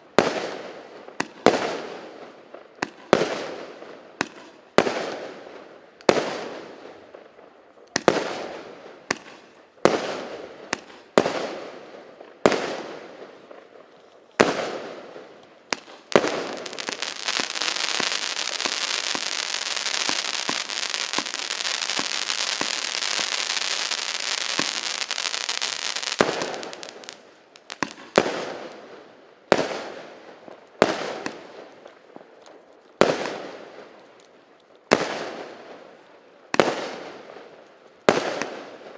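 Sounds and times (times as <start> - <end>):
firework crackling: 14.4 - 28.9.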